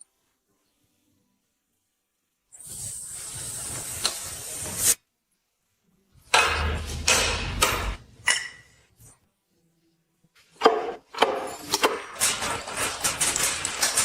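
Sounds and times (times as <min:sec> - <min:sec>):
steady hiss: 0:02.5 - 0:05.1.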